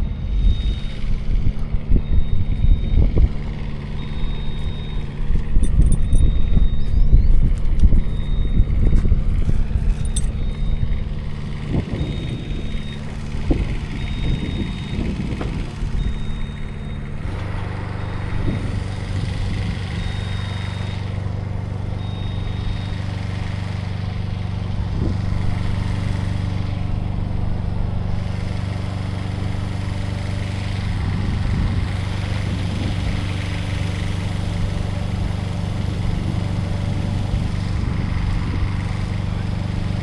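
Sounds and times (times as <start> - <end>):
machine engine running: 0.0 - 40.0
short high beeps: 0.2 - 23.4.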